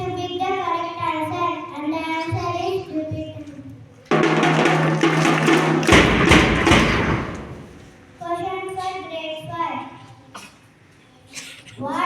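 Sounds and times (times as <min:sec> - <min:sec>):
child's voice: 0:00.0 - 0:03.8, 0:08.2 - 0:12.0
heavy bass drum beats: 0:04.1 - 0:08.0
percussive music: 0:04.1 - 0:08.1.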